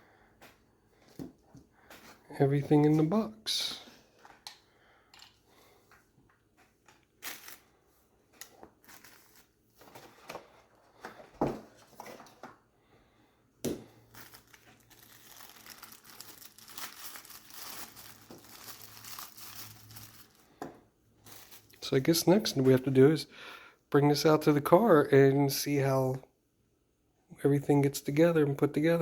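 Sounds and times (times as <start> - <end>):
packaging crinkling and rustling: 6.9 - 12.6, 14.1 - 20.6, 21.2 - 21.9.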